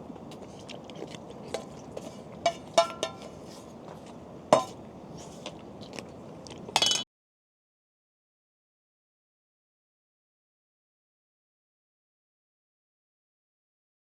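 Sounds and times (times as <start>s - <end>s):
metal utensils clinking on pots: 2.4s - 3.6s, 4.6s - 4.8s, 6.7s - 7.0s.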